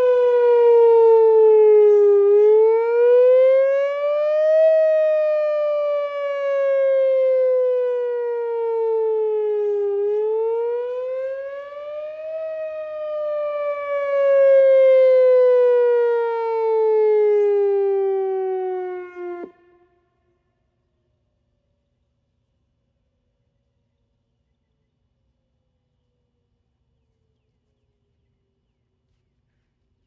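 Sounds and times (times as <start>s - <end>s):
warning siren wailing: 0.0s - 20.1s.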